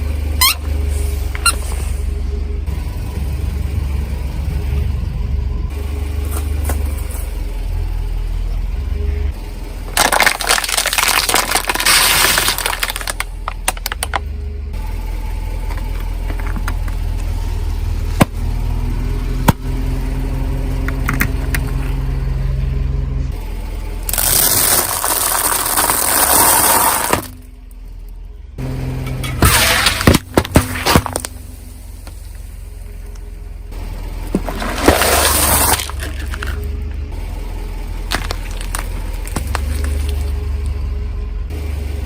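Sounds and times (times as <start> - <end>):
car engine droning: 0.0 - 42.0
tyre crushing crunchy objects: 9.9 - 14.2, 24.1 - 27.4, 29.2 - 32.4, 34.2 - 36.8, 38.0 - 40.7.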